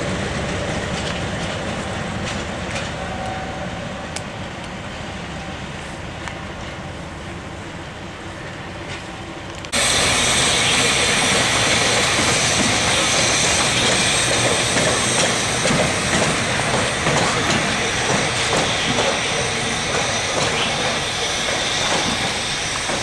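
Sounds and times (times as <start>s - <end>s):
train running close by: 0.0s - 23.0s
station ambience: 0.1s - 23.0s.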